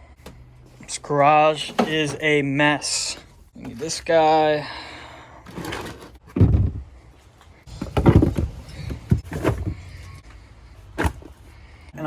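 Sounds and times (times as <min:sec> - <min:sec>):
heavy thuds and bumps: 0:06.2 - 0:07.0, 0:07.7 - 0:10.1.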